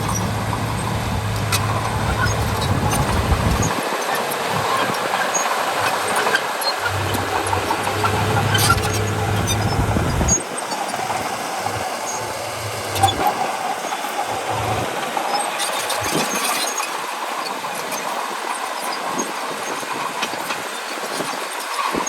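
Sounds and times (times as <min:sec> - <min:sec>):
bulldozer mechanical din: 0:00.0 - 0:16.7
steel tracks clanking: 0:00.0 - 0:22.0.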